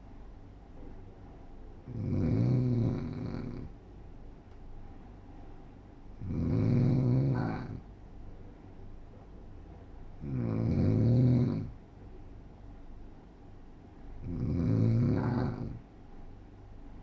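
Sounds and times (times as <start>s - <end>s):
person snoring: 1.9s - 3.7s, 6.2s - 7.8s, 10.2s - 11.7s, 14.2s - 15.8s.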